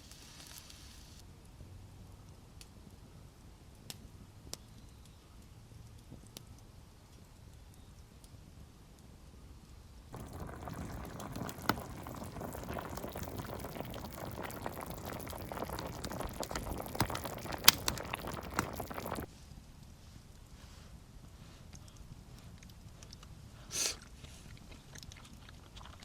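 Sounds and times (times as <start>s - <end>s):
food bubbling over campfire: 10.2s - 19.3s.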